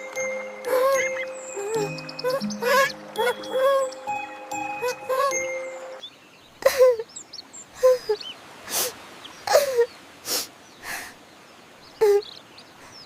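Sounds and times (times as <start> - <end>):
held music note: 0.0 - 6.0
cartoon character sobbing: 4.8 - 5.5.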